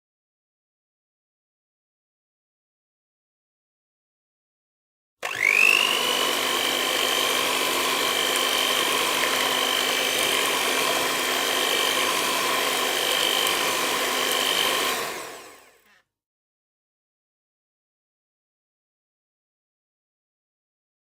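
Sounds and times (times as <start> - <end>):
small electric motor whining: 5.2 - 16.0.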